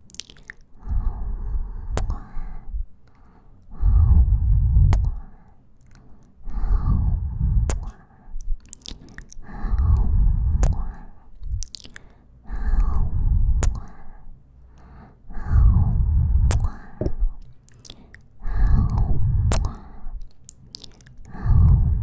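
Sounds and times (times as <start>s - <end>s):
breaths blowing on microphone: 3.7s - 5.2s, 6.5s - 8.0s, 9.4s - 11.6s, 15.3s - 17.4s, 18.5s - 20.2s, 21.3s - 22.0s
kisses and lip smacks: 7.7s - 9.4s, 13.6s - 13.9s.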